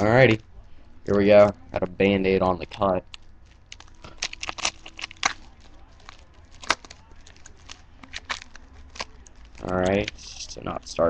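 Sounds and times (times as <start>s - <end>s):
foil wrapper crinkling and tearing: 3.1s - 10.6s.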